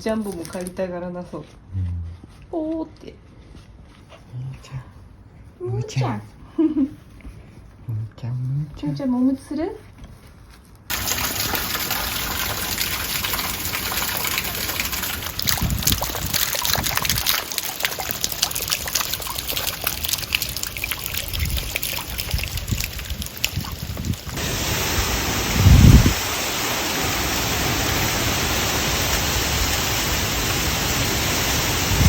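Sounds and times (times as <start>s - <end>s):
heavy rain falling: 10.9s - 32.0s.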